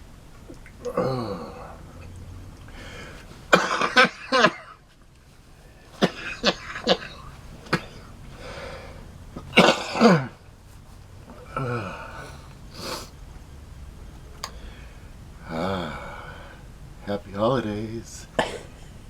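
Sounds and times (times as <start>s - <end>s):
man clearing throat: 0.8s - 1.9s, 3.5s - 4.8s, 6.0s - 8.1s, 9.4s - 10.4s, 15.5s - 16.3s, 18.3s - 18.9s
man coughing hard: 3.5s - 4.8s, 6.0s - 8.1s, 9.4s - 10.4s, 18.4s - 18.9s.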